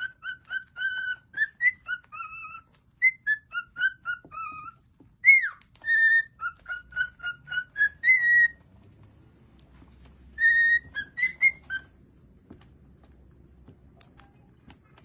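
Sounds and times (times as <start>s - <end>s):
bird whistling: 0.0s - 8.6s, 10.3s - 12.0s.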